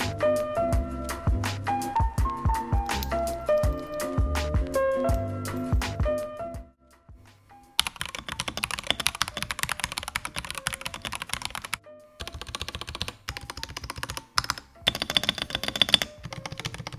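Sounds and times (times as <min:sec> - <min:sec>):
mechanical keyboard typing: 0:07.8 - 0:16.9.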